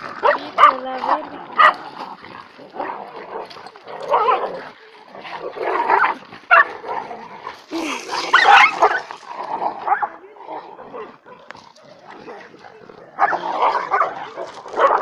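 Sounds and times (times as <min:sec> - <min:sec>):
dogs growling and snarling: 0:00.0 - 0:15.0
dog yelps and barks: 0:05.9 - 0:06.8, 0:08.2 - 0:09.1, 0:09.8 - 0:11.2, 0:12.6 - 0:15.0.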